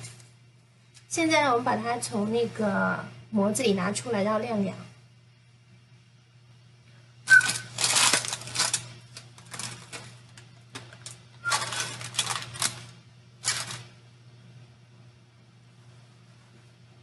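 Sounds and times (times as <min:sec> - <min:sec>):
cake rustling in baking pan: 0:07.3 - 0:14.0.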